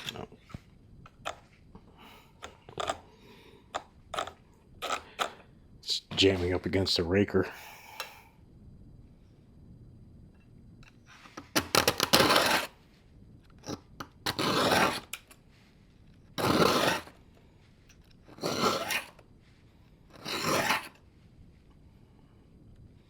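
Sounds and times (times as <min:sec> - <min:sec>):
file scraping saw chain teeth: 0:04.2 - 0:05.3, 0:11.8 - 0:12.7, 0:14.3 - 0:15.3, 0:16.4 - 0:17.1, 0:18.3 - 0:19.2, 0:20.2 - 0:21.0.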